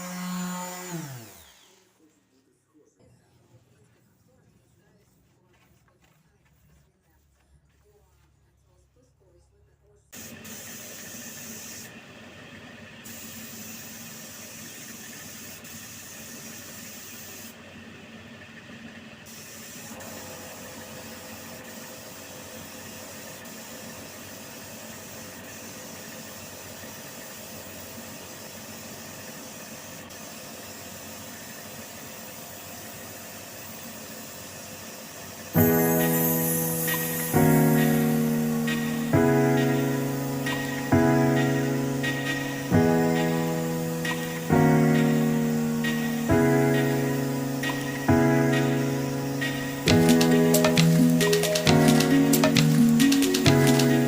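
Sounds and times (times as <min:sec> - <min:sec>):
steady hissing noise: 0:19.3 - 0:54.0.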